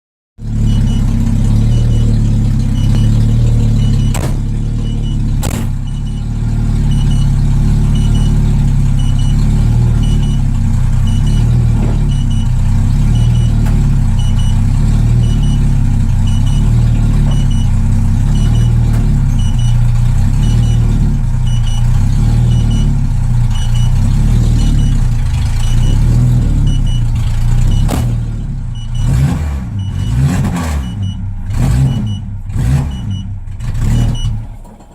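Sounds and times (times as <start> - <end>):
unmuffled engine drone: 0.4 - 34.8.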